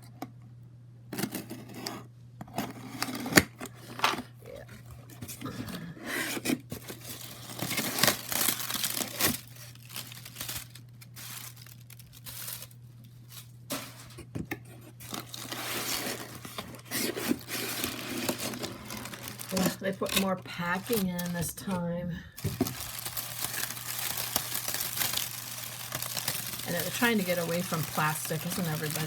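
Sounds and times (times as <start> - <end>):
paper tearing and crinkling: 5.4 - 14.2, 15.0 - 21.6, 22.4 - 29.0.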